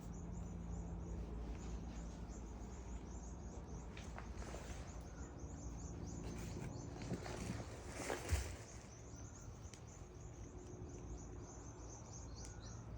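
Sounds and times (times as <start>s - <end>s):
small birds chirping: 0.0s - 12.9s
steady low hum: 0.0s - 12.9s.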